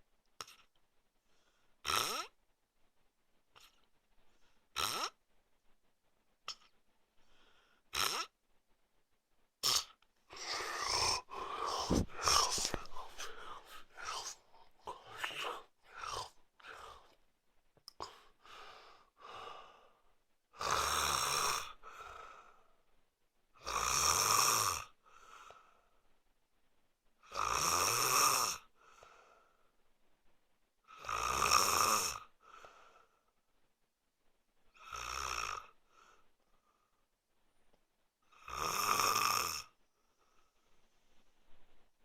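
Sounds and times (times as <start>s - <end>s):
man snoring: 4.8s - 5.1s, 9.6s - 16.8s, 20.6s - 21.8s, 23.6s - 24.9s, 27.3s - 28.6s, 31.0s - 32.3s, 34.8s - 35.8s, 38.4s - 39.8s
soft breath: 10.3s - 17.2s, 28.8s - 29.8s, 32.4s - 33.4s, 35.9s - 37.2s.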